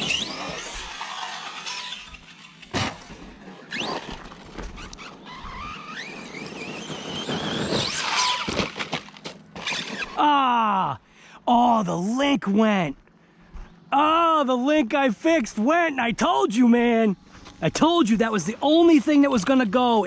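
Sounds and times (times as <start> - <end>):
electric motor whining: 0.0 - 10.2
toy truck hitting ground: 0.0 - 10.2
tyres on loose dirt: 0.0 - 10.5.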